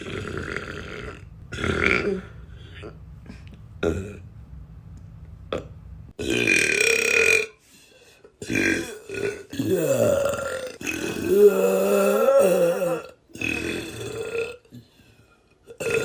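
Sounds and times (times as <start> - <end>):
person burping loudly: 0.0 - 3.0, 3.8 - 4.2, 5.5 - 7.6, 8.4 - 14.8, 15.7 - 16.0.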